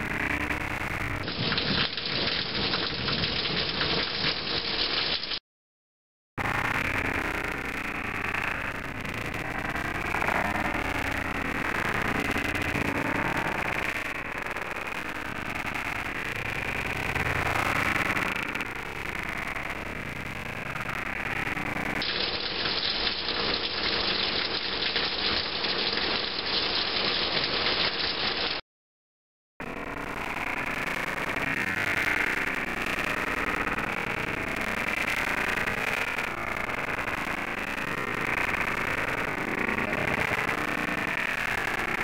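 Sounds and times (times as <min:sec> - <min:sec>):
heavy rain falling: 0:00.0 - 0:05.2, 0:06.4 - 0:28.6.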